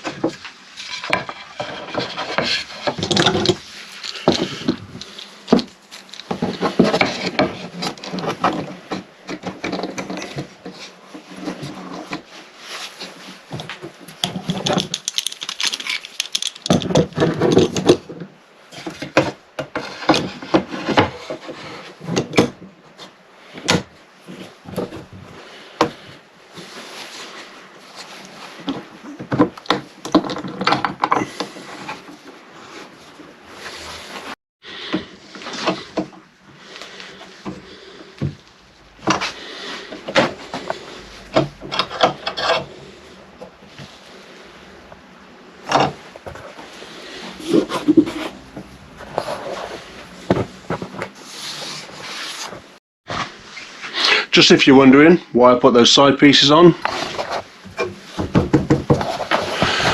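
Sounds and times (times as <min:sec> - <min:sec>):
wood scraping on wood: 0:00.0 - 0:54.0, 0:56.3 - 0:59.9
wood knocks and clicks: 0:57.8 - 0:59.1.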